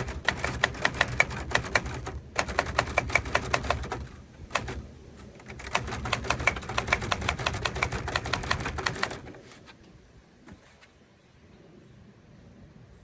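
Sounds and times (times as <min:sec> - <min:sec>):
typewriter keys striking: 0:00.0 - 0:09.6.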